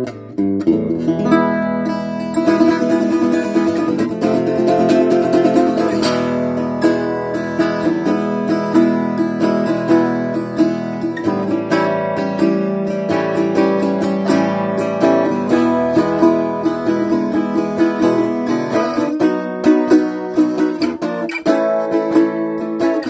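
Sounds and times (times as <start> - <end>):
acoustic guitar strummed and plucked: 0.0 - 23.0.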